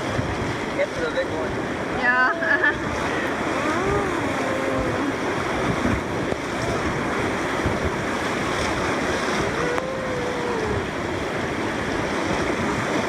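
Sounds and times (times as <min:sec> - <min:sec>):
river rapids rushing: 0:00.0 - 0:13.0.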